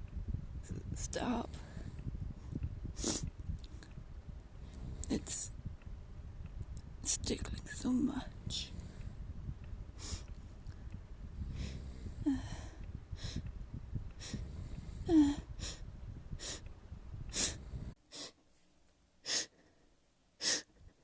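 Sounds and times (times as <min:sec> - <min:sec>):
person sniffing: 0:03.0 - 0:03.3, 0:17.4 - 0:18.4, 0:19.2 - 0:19.8, 0:20.4 - 0:20.7
hitching breaths: 0:08.3 - 0:16.7, 0:17.3 - 0:18.4.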